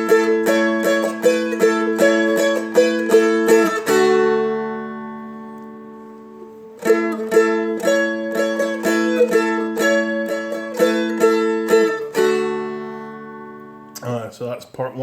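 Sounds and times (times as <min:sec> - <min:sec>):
strummed dulcimer melody: 0:00.0 - 0:13.9.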